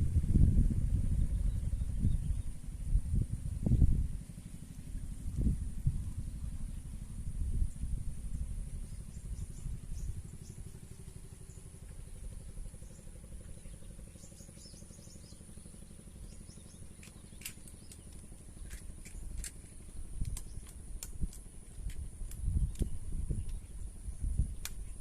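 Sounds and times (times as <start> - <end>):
small engine running: 0.2 - 25.0
sharp clicks: 17.0 - 23.6, 24.6 - 24.9.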